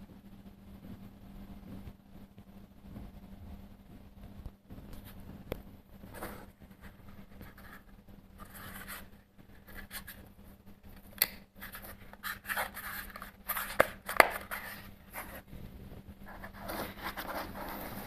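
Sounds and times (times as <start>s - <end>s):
handling rubbing and scraping: 11.6s - 18.0s.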